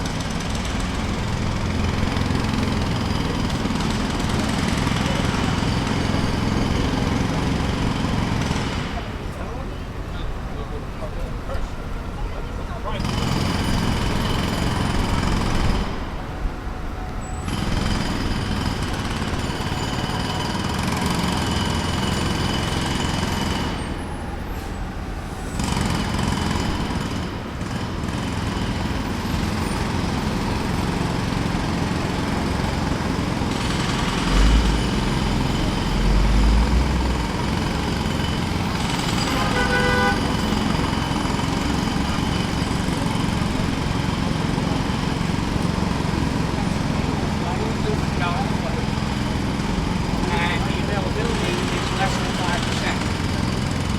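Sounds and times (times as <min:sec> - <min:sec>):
distant jackhammer: 0:00.0 - 0:11.8, 0:12.8 - 0:53.9
street traffic: 0:00.0 - 0:53.9
horn toot: 0:39.2 - 0:40.4.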